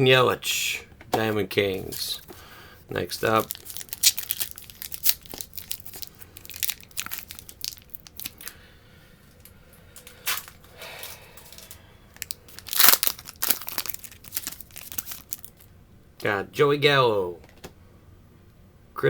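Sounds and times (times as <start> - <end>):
foil wrapper tearing and crinkling: 3.2 - 8.6, 11.5 - 15.7.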